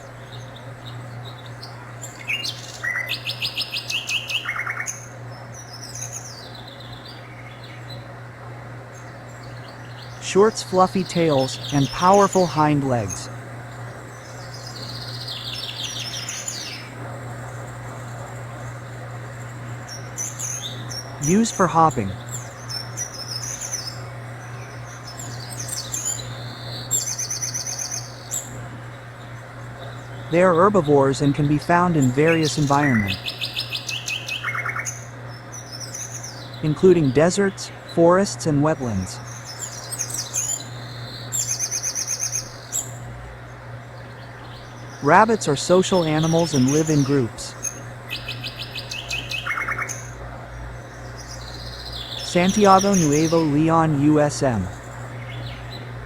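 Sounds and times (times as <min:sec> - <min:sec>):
songbirds chirping: 0:00.0 - 0:56.0
steady low hum: 0:00.0 - 0:56.0
rapid trilled chirps: 0:30.2 - 0:35.0, 0:44.9 - 0:50.2, 0:51.2 - 0:55.8.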